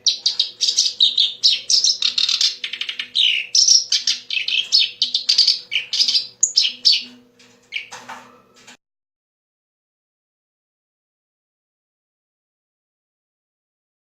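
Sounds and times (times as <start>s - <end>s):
reed warbler singing: 0.0s - 7.1s.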